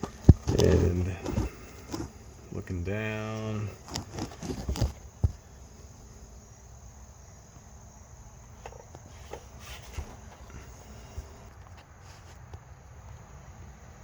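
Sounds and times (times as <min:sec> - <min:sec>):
handling knocks and rustles: 0:00.0 - 0:05.9, 0:08.5 - 0:12.6
high insect chirring: 0:00.0 - 0:14.0.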